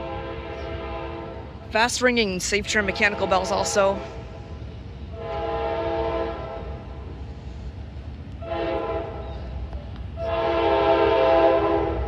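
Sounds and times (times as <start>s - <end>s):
train air horn blasts: 0.0s - 1.5s, 2.7s - 4.3s, 5.1s - 6.8s, 8.4s - 9.3s, 10.2s - 12.0s.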